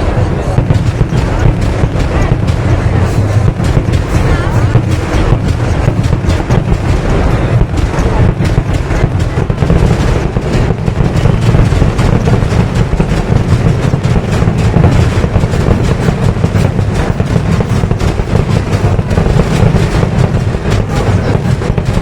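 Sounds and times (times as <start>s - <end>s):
firecracker explosions: 0.0s - 22.0s
heavy low rumble: 0.0s - 22.0s.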